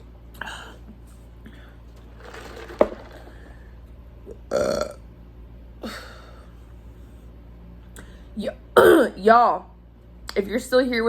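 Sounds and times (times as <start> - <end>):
woman burping: 4.3 - 5.0, 8.8 - 9.1.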